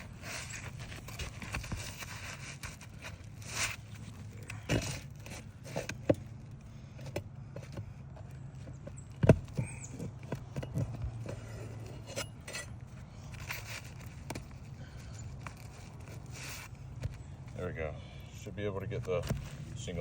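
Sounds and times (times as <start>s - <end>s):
clicks and scrapes of hand work: 0.0s - 17.3s
steady low hum: 0.0s - 20.0s.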